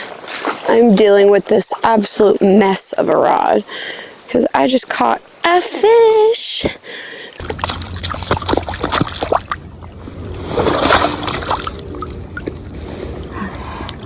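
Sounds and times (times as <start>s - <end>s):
stream water splashing: 0.0s - 13.4s.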